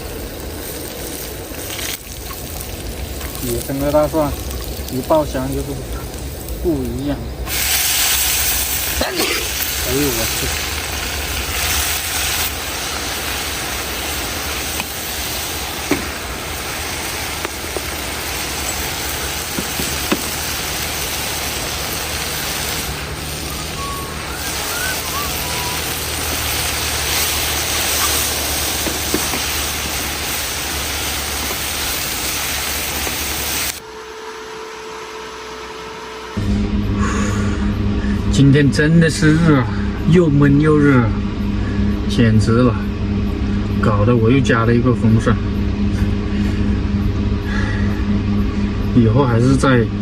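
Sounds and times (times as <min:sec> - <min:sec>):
food stir-frying in a pan: 0:00.0 - 0:33.8
steady hum: 0:00.0 - 0:50.0.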